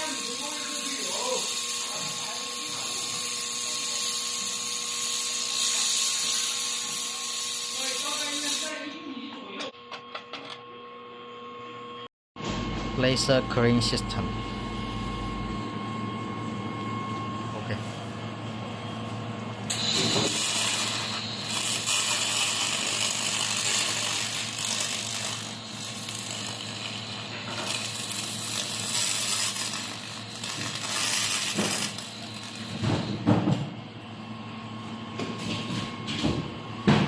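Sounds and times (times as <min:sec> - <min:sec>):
laser cleaning hissing crackle: 0:00.0 - 0:08.8, 0:19.7 - 0:32.9
low machine hum: 0:08.7 - 0:37.0.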